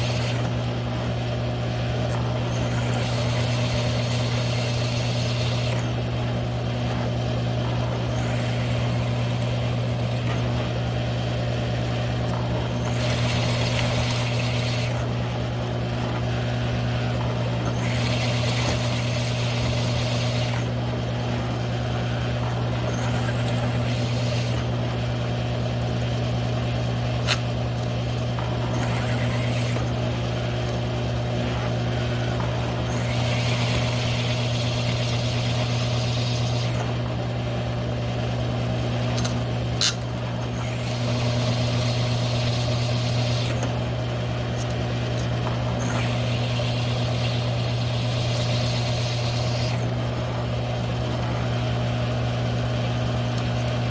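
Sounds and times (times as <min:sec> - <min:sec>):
drill motor humming: 0:00.0 - 0:53.9
hole saw cutting steel: 0:02.4 - 0:06.0, 0:12.8 - 0:15.1, 0:17.6 - 0:20.8, 0:22.8 - 0:24.8, 0:27.2 - 0:27.5, 0:28.6 - 0:30.0, 0:32.8 - 0:37.0, 0:39.2 - 0:43.7, 0:44.6 - 0:49.9.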